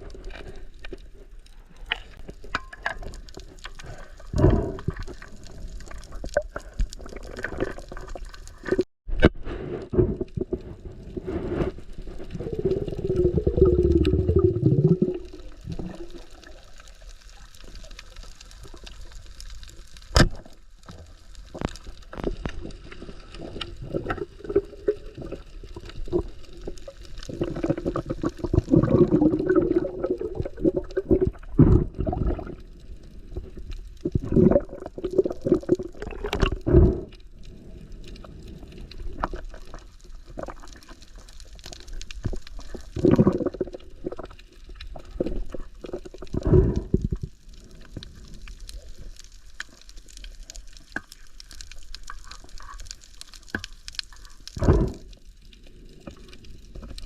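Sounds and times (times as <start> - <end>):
water gurgling and sloshing: 9.4 - 19.0, 21.6 - 48.6, 53.5 - 57.0.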